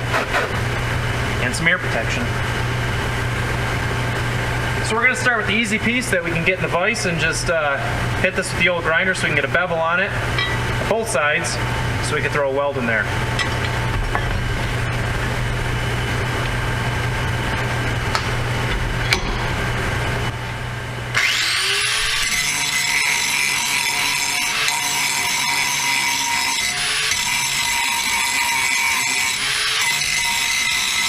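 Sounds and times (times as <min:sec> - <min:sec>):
angle grinder grinding steel: 0:21.1 - 0:31.0.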